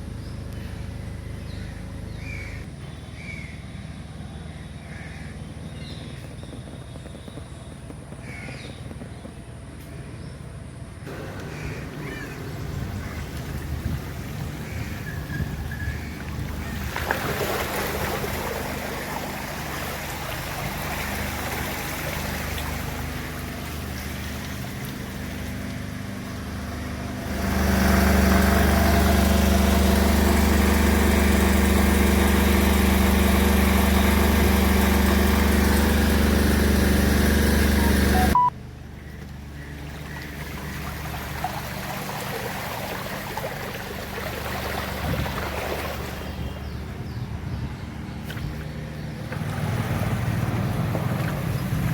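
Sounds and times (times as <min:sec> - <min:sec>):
engine running close by: 0:00.0 - 0:51.9
traffic noise: 0:00.0 - 0:51.9
water: 0:11.0 - 0:51.9.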